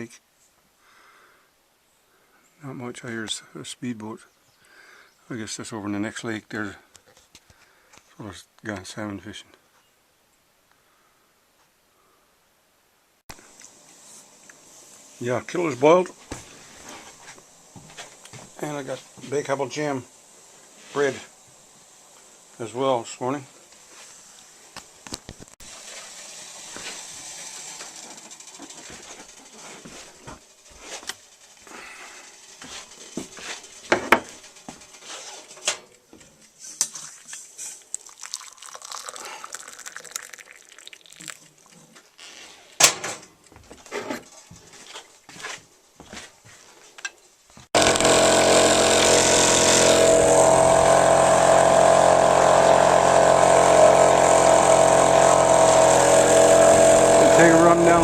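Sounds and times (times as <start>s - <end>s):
water pouring from kettle: 25.6s - 30.3s, 37.0s - 41.8s
dishes clinking and knocking: 33.9s - 34.3s
boat motor running: 47.8s - 58.0s.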